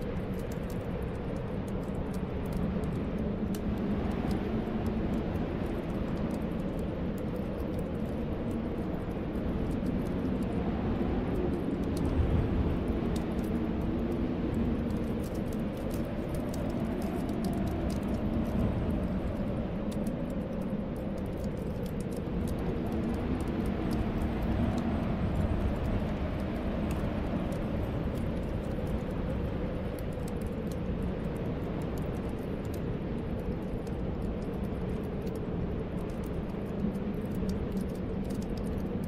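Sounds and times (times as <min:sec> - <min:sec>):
wind howling: 0:00.0 - 0:39.0.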